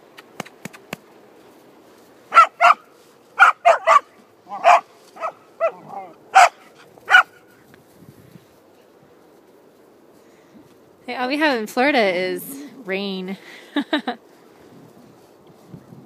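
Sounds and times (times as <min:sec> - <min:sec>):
puppy barking: 0:02.3 - 0:07.4.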